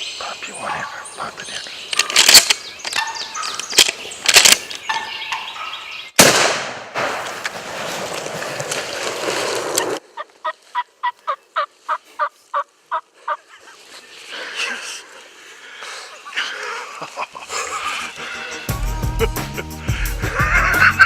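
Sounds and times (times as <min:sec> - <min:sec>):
turkey yelping: 0:02.9 - 0:03.7
sharp loud crack: 0:06.2 - 0:07.9.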